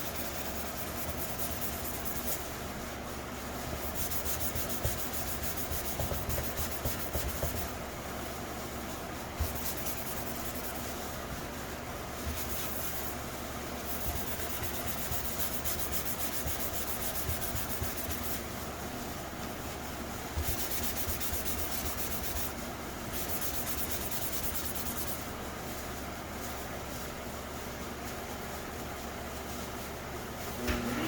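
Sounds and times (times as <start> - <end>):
hand sanding scratchy rubbing: 0.0 - 2.6, 3.7 - 7.8, 9.4 - 11.0, 12.2 - 13.2, 13.8 - 18.5, 20.4 - 25.2.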